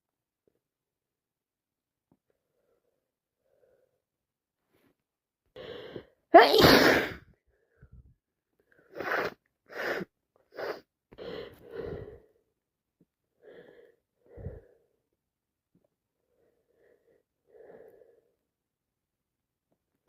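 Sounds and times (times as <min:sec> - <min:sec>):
person sneezing: 0:06.4 - 0:07.3
person breathing and sniffing: 0:08.8 - 0:12.4.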